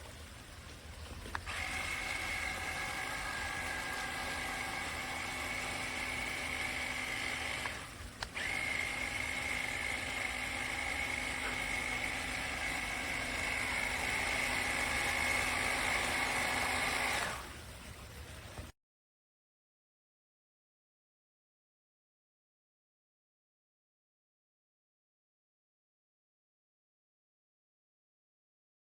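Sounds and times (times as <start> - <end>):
motor click: 1.3 - 17.4
electric motor whining: 1.3 - 17.6.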